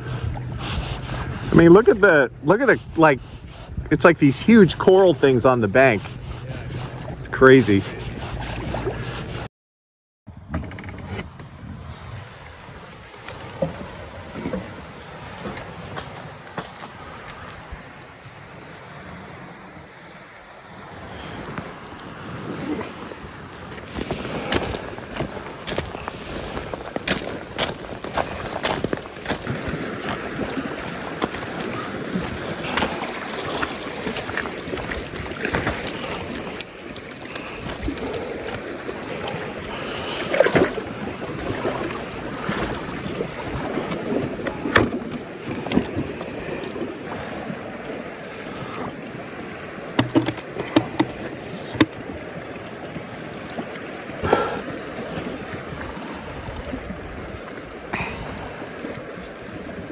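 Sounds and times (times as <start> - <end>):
water lapping and sloshing: 0.0 - 9.5, 10.8 - 59.9
short splashes or knocks: 22.4 - 47.2, 49.9 - 52.2.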